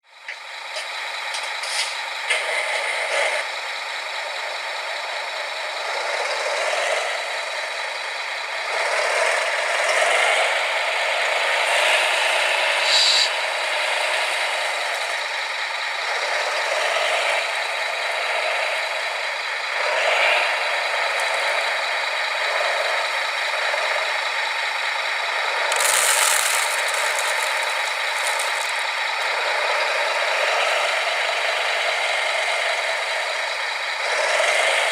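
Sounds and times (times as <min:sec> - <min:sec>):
small electric motors whining: 0:25.5 - 0:30.0.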